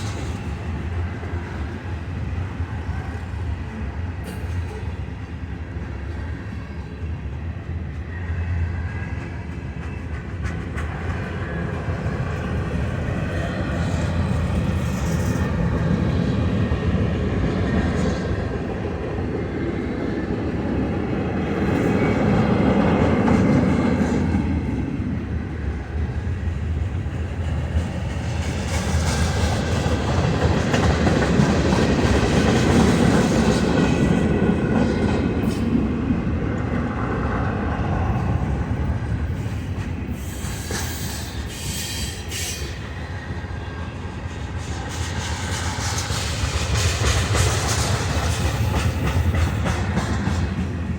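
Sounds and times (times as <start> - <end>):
freight train wheels rumbling on rails: 0.0 - 50.9
faint wheel squeal: 39.4 - 42.8.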